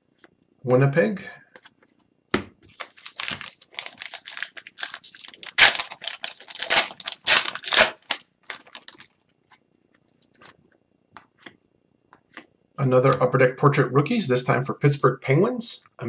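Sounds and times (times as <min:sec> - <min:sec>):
cards rustling and sliding: 0:02.6 - 0:09.6.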